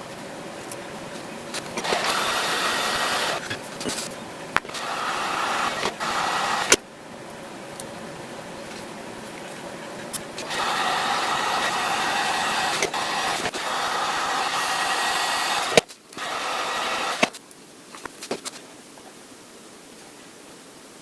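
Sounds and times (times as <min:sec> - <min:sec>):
heat gun fan whine: 0:00.0 - 0:17.4
sharp clicks: 0:01.5 - 0:06.8, 0:10.1 - 0:17.4.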